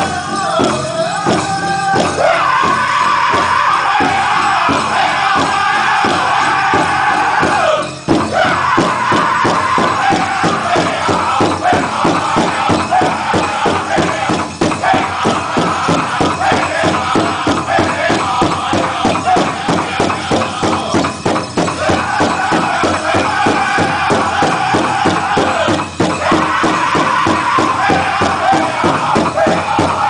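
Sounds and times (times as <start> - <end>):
high-pitched group singing: 0.0 - 30.0
quick steady drumbeat: 0.0 - 30.0.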